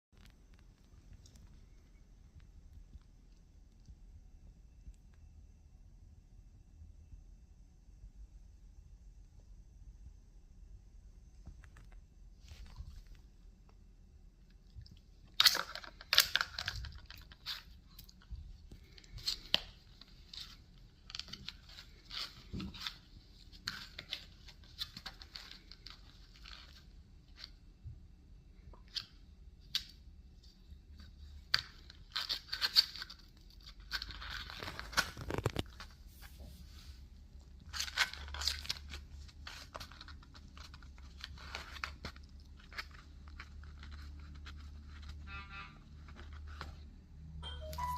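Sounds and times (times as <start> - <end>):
puppy ripping cardboard: 31.5 - 35.9.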